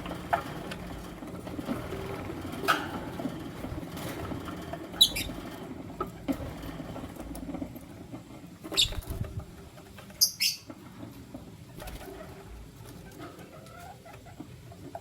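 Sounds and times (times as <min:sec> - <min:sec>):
low background noise: 0:00.0 - 0:15.0
lovebirds chirping: 0:08.8 - 0:09.0, 0:10.2 - 0:10.7.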